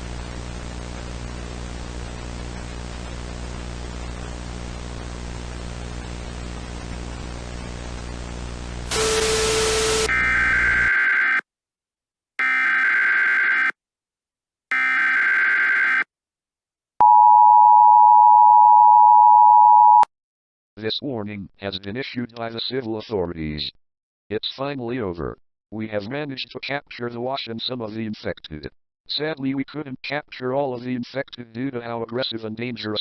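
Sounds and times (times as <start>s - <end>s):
static hiss: 8.8s - 10.9s
burst of noise: 8.9s - 10.9s
harsh digital screeches: 8.9s - 11.4s
two-tone alert signal: 17.0s - 20.1s.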